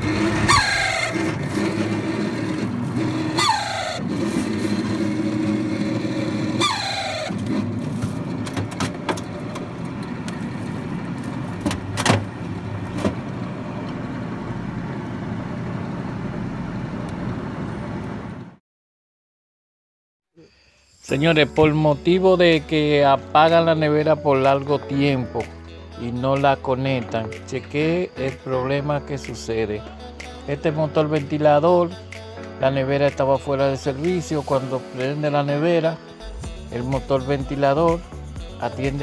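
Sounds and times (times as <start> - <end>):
refrigerator fan motor droning: 0.0 - 18.0
squeal falling in pitch: 3.2 - 4.0, 6.5 - 7.4.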